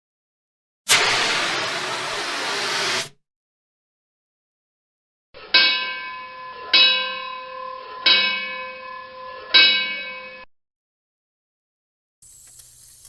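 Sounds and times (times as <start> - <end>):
fire engine bell ringing: 5.5 - 10.5.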